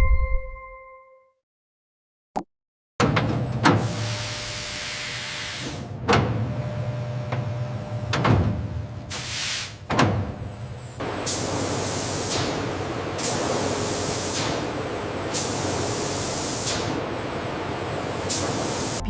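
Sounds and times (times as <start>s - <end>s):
hissing spray bursts: 11.3s - 16.9s.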